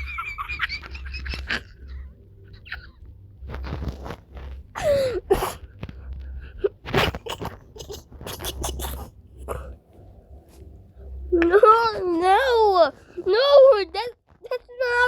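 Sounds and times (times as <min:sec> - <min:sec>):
person wheezing with laughter: 0:04.8 - 0:05.6.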